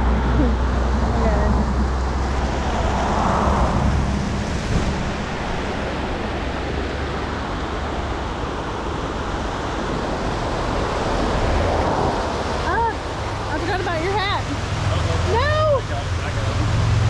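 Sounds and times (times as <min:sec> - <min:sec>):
low rumble: 0:00.0 - 0:08.2
stream rushing: 0:00.0 - 0:17.0.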